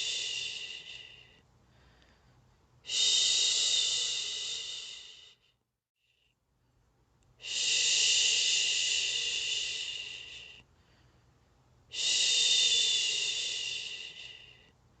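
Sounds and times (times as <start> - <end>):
person shushing: 0.0 - 1.4, 2.9 - 5.4.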